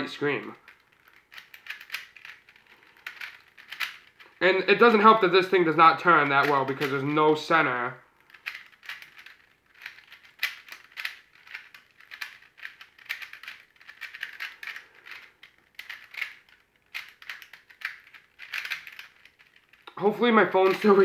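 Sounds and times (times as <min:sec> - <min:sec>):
puzzle cube clicking and clacking: 0:00.0 - 0:21.0.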